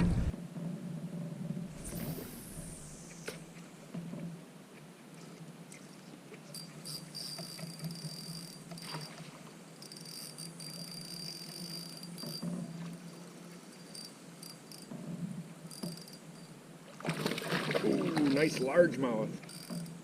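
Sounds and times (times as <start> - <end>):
faint outdoor hiss: 0.0 - 20.0
crickets trilling: 1.7 - 3.4, 6.5 - 14.9, 15.6 - 16.6, 17.8 - 20.0.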